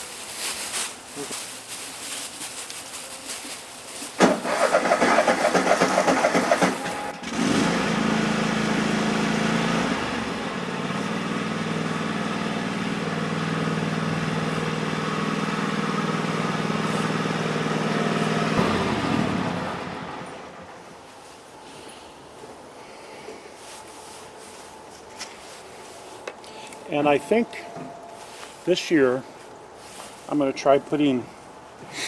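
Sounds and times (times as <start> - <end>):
small gasoline engine running: 4.2 - 20.3.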